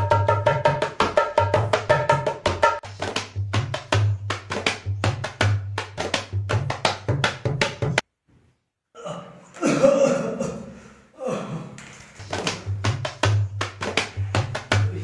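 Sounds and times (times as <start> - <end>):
fast hand-drum beat: 0.0 - 8.0, 12.3 - 15.0
person drawn-out vocal sound: 9.0 - 11.8.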